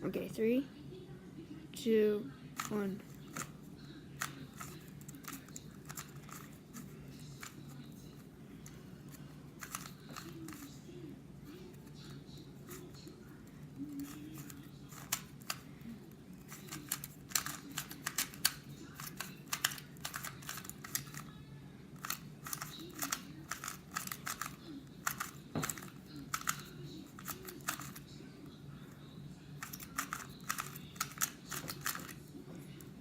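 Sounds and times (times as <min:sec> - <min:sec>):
puzzle cube plastic clicks: 0:02.6 - 0:03.6, 0:04.2 - 0:07.8, 0:08.6 - 0:10.8, 0:13.9 - 0:15.7, 0:16.5 - 0:21.3, 0:22.0 - 0:28.1, 0:29.6 - 0:32.2.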